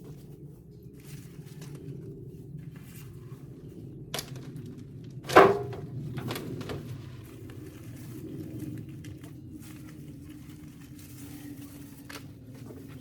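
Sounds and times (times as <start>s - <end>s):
hollow thunk: 5.3s - 5.9s.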